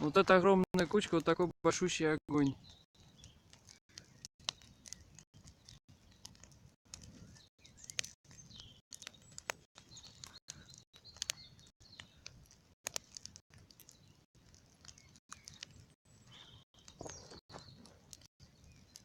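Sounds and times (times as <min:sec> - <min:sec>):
bonfire crackling and popping: 0:00.0 - 0:19.0
faint bird chirps: 0:14.8 - 0:19.0.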